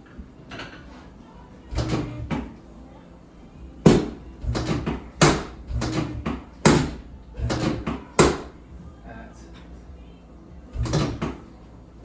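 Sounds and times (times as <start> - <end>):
dull thumps and clunks: 3.9 - 8.9, 10.7 - 11.4.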